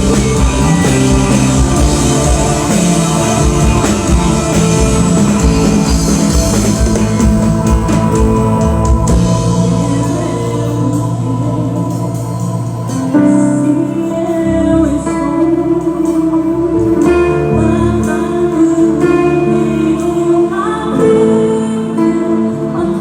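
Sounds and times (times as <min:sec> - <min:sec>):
guitar backing: 0:00.0 - 0:16.6
person singing: 0:00.0 - 0:23.0.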